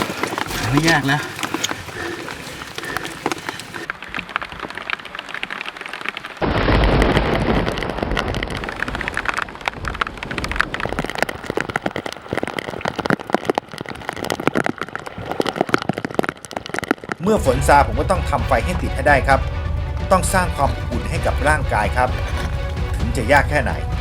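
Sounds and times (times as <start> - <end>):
heavy rain falling: 0.0 - 19.2
deep rumble: 17.4 - 24.0.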